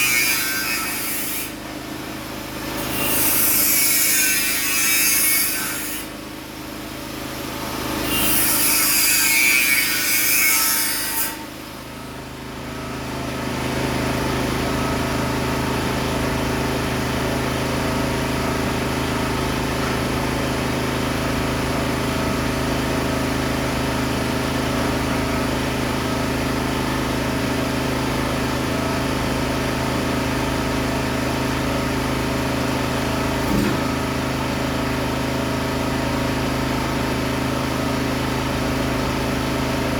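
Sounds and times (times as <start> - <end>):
harsh tool noise: 0.0 - 1.7, 2.4 - 6.2, 7.3 - 11.6, 33.3 - 34.4
mechanical hum: 0.0 - 39.9.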